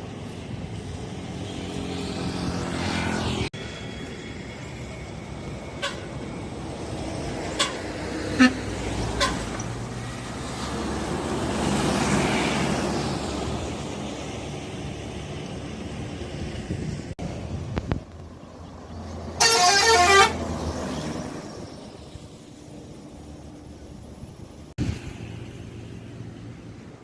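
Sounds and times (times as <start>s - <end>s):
vehicle passing close by: 0.5s - 5.0s, 6.1s - 17.7s, 18.5s - 23.9s.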